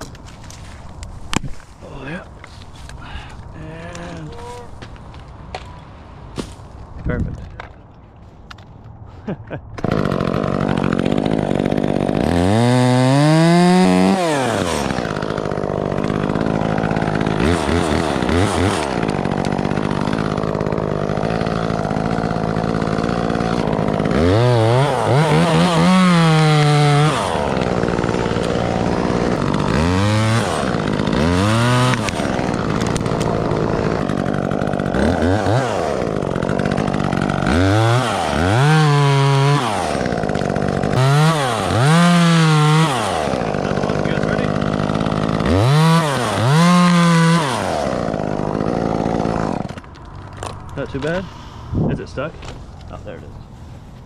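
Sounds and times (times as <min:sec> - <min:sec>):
chainsaw revving: 0:09.8 - 0:52.6.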